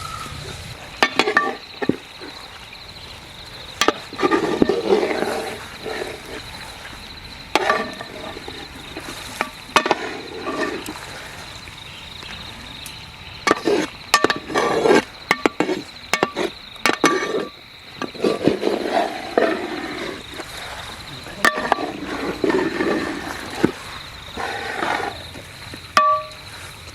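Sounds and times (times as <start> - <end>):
insect drone: 0.0 - 26.9
utensils clinking against a pot: 1.0 - 2.0, 15.3 - 18.5, 21.3 - 23.8, 26.0 - 26.4.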